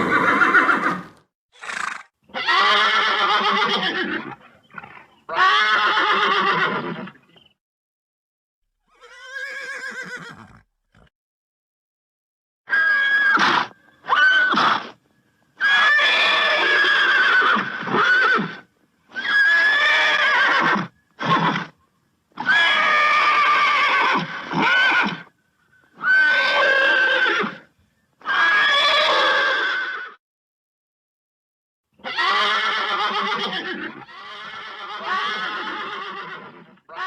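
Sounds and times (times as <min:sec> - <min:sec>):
horse neighing: 0:00.0 - 0:07.2, 0:08.9 - 0:11.1, 0:26.0 - 0:27.6, 0:28.2 - 0:30.2, 0:32.0 - 0:37.0.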